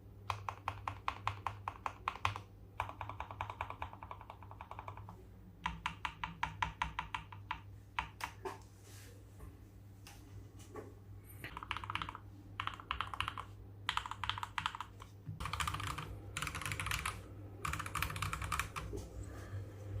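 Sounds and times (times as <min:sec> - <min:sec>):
mechanical keyboard typing: 0:00.3 - 0:08.4, 0:11.5 - 0:18.9.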